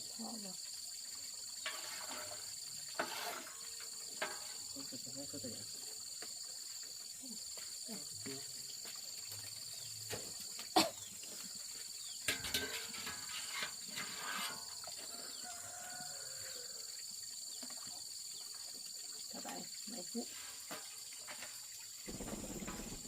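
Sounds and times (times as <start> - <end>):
high-pitched insect chorus: 0.0 - 23.0
clattering and rustling: 1.6 - 4.7, 11.3 - 15.1.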